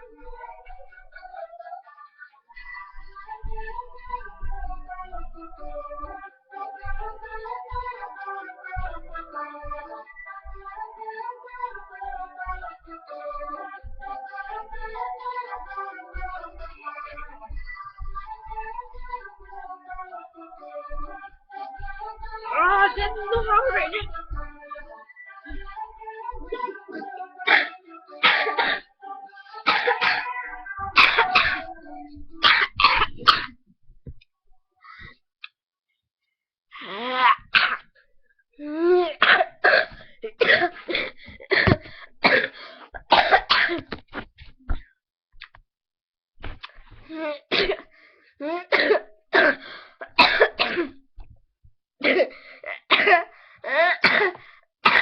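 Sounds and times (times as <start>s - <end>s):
girl coughing: 27.5s - 28.9s, 29.7s - 30.3s, 31.0s - 31.7s, 32.4s - 33.5s, 37.3s - 37.8s, 39.2s - 43.9s, 47.5s - 47.9s, 48.6s - 51.0s, 52.0s - 55.0s.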